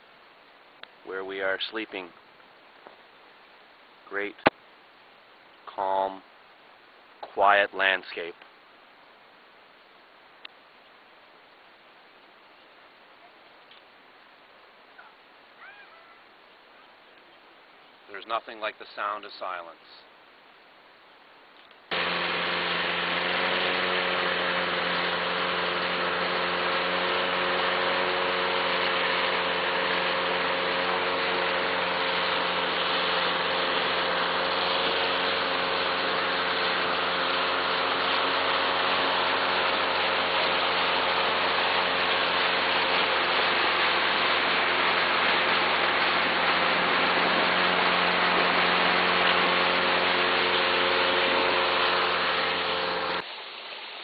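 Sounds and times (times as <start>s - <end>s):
engine running steadily: 21.9s - 53.3s.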